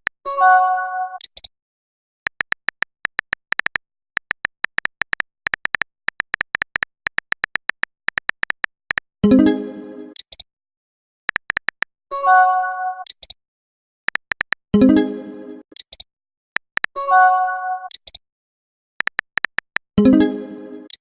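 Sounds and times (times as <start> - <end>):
phone keyboard typing clicks: 1.2 - 1.5, 2.3 - 9.1, 10.1 - 10.4, 11.3 - 11.9, 13.0 - 13.4, 14.1 - 14.7, 15.7 - 17.0, 17.9 - 18.2, 19.0 - 19.9.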